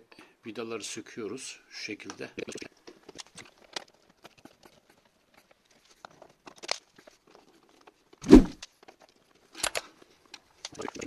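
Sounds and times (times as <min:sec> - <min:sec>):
loud thump: 0:08.2 - 0:08.6.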